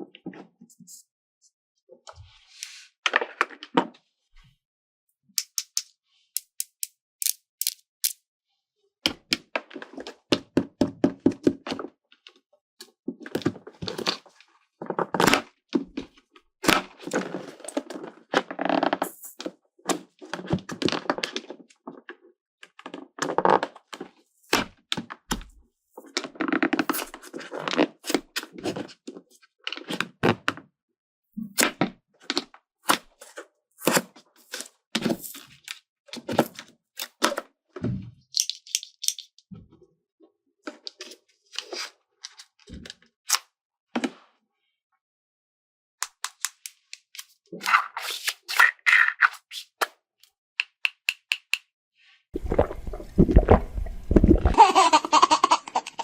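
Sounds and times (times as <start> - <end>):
plastic toy pieces clicking: 5.4 - 8.2.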